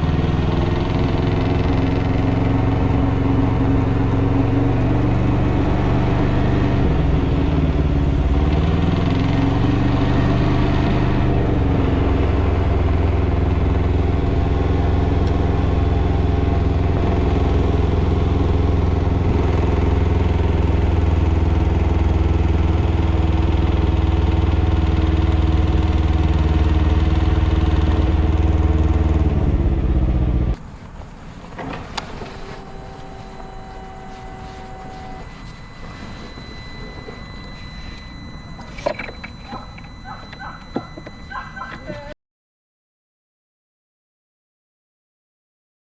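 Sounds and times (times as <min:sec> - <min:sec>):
knocking engine running: 0:00.0 - 0:42.1
faint steady hum: 0:30.5 - 0:42.2.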